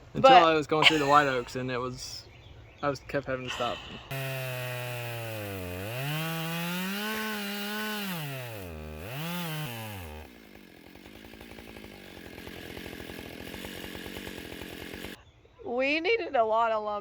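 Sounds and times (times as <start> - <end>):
chainsaw running: 0.0 - 1.5, 3.5 - 15.2.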